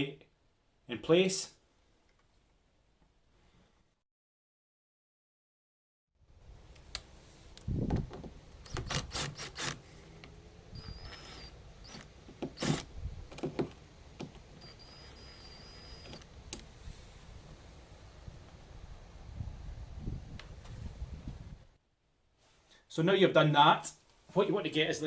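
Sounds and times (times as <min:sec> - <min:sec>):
cordless screwdriver whirring: 0:08.6 - 0:09.9, 0:10.7 - 0:12.9, 0:14.6 - 0:16.3.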